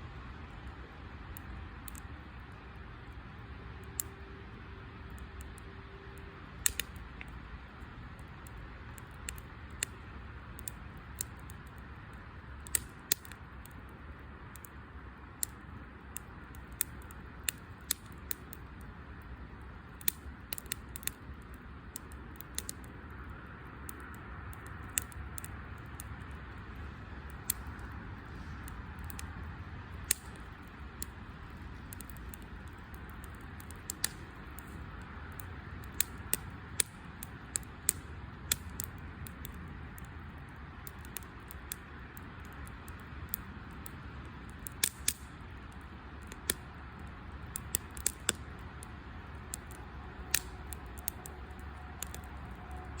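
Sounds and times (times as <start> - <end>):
low fire hiss: 0.0 - 53.0
campfire crackling and popping: 0.2 - 53.0.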